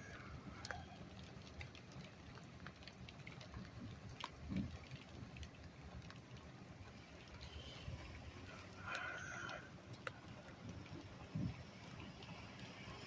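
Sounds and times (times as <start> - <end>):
light rain falling: 0.0 - 13.0
raindrops pattering: 0.0 - 13.0.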